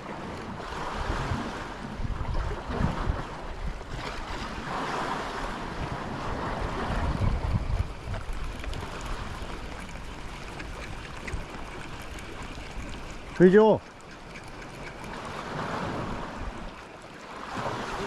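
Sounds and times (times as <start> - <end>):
waves washing against rocks: 0.0 - 18.0
wind buffeting microphone: 0.0 - 18.0.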